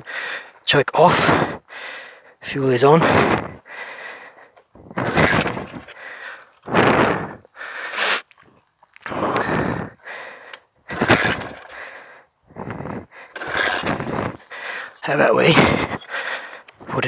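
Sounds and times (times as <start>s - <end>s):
person breathing heavily: 0.0s - 8.4s, 9.0s - 17.0s.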